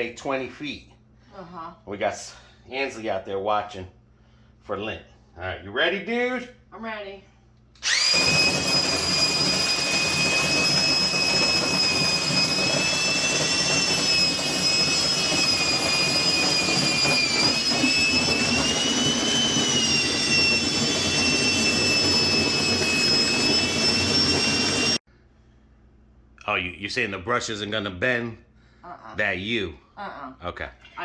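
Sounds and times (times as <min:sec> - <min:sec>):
electric drill whining: 0:07.8 - 0:25.0.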